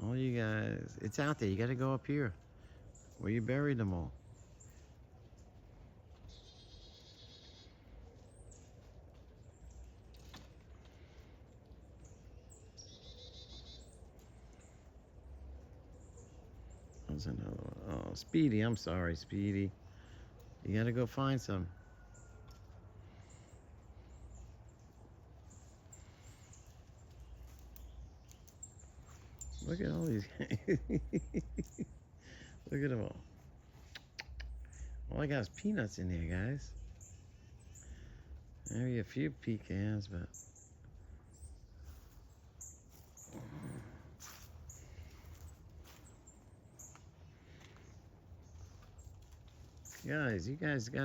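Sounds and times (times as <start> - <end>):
faint clicks: 33.8 - 34.8
soft low murmur: 40.3 - 51.0.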